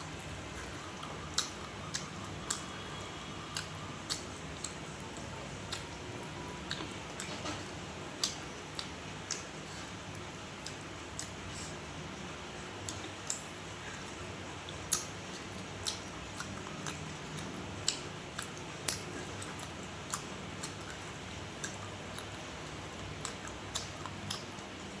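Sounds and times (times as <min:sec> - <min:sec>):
wet chewing: 0:00.0 - 0:09.9, 0:12.8 - 0:24.8
steady low hum: 0:00.0 - 0:25.0.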